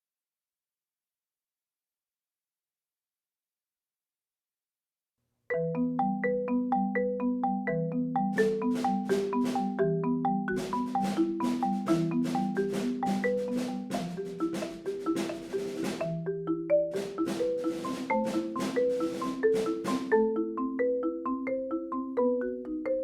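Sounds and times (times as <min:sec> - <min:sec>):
marimba played with mallets: 0:05.5 - 0:23.0.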